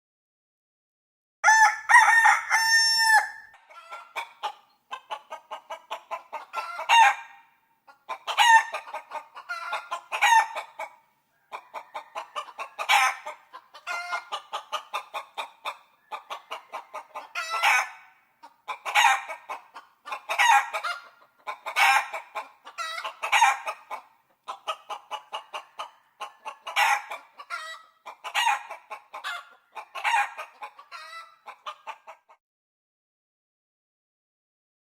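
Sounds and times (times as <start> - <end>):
rooster crowing: 1.4 - 3.9, 11.3 - 13.3
chicken clucking and squawking: 1.4 - 32.4.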